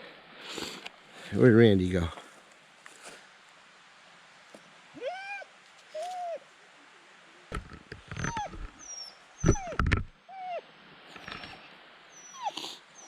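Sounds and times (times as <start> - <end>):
dog whining: 5.0 - 6.4, 8.1 - 10.6, 11.2 - 13.0.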